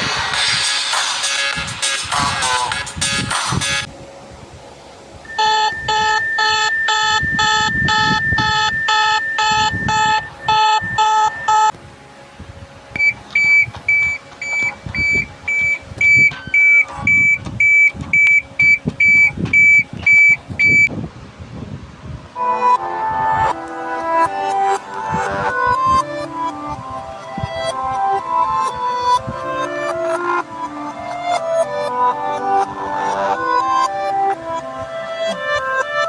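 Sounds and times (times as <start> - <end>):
steady high tone: 5.1 - 12.2, 22.3 - 35.6
chord-like alarm beeps: 5.2 - 11.7, 13.0 - 20.9
high single-pitch alarm beep: 5.3 - 11.7, 13.0 - 20.9.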